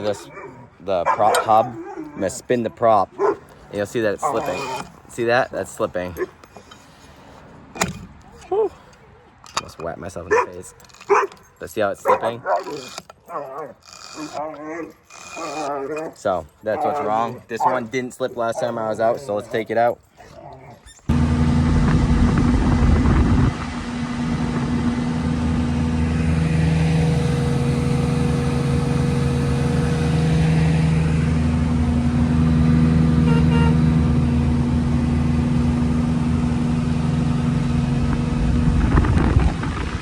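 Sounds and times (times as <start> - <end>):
engine running steadily: 21.1 - 40.0.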